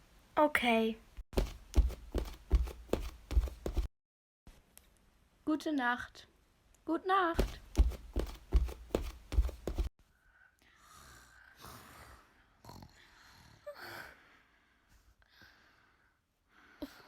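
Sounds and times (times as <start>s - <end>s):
quick knocks and bumps: 1.4s - 3.9s, 7.4s - 9.9s
faint breathy sounds: 10.0s - 17.0s.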